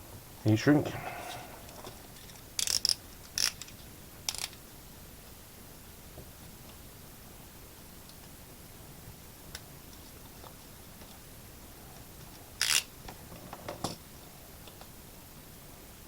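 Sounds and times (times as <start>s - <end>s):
faint steady hiss: 0.0s - 16.0s
soft clicks and rustles: 11.9s - 15.0s.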